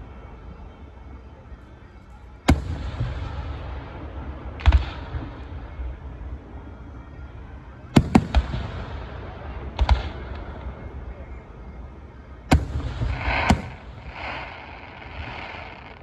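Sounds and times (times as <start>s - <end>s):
fireworks bangs with rumbling echo: 2.5s - 6.1s, 8.0s - 11.4s, 12.5s - 16.0s.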